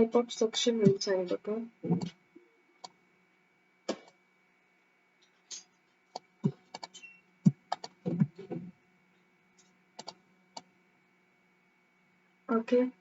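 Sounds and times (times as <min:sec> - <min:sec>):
faint electrical hum: 0:00.0 - 0:13.0
computer keyboard and mouse clicks: 0:06.1 - 0:08.0, 0:10.0 - 0:10.7.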